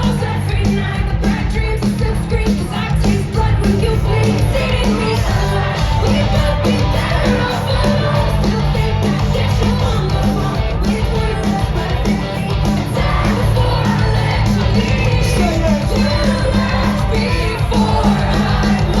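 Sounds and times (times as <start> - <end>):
live rock band playing: 0.0 - 19.0
person singing: 0.0 - 19.0.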